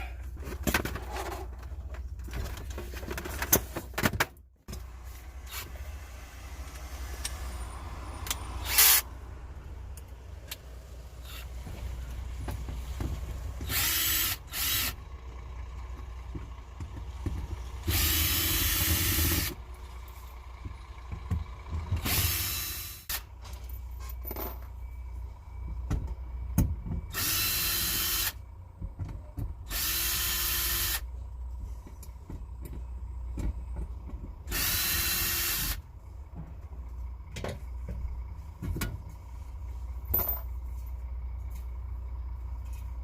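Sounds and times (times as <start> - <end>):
steady low hum: 4.6 - 43.0
power drill running: 8.6 - 9.1, 13.6 - 15.0, 17.8 - 19.6, 22.0 - 23.2, 27.1 - 28.4, 29.7 - 31.1, 34.5 - 35.8.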